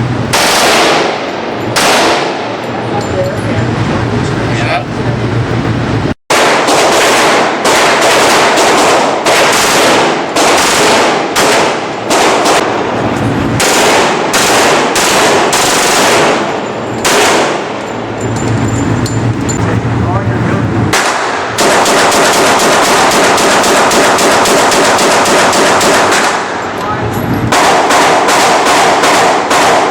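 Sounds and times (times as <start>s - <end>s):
rapid pistol gunfire: 0.3s - 2.6s, 6.3s - 12.8s, 13.6s - 17.8s, 20.9s - 26.7s, 27.5s - 29.9s.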